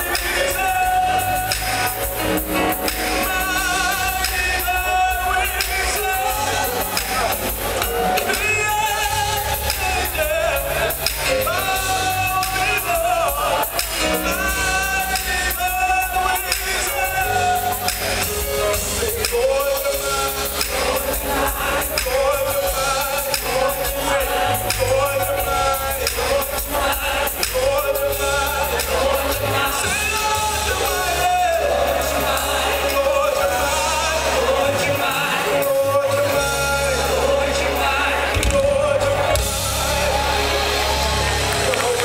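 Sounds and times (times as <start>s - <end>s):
band with steady bass: 0.0s - 42.0s
gospel choir singing: 0.0s - 42.0s.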